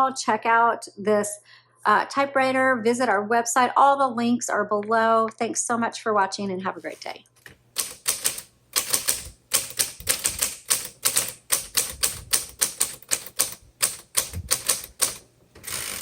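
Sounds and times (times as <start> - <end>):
typewriter key strikes: 7.8 - 16.0
typewriter motor humming: 7.8 - 16.0.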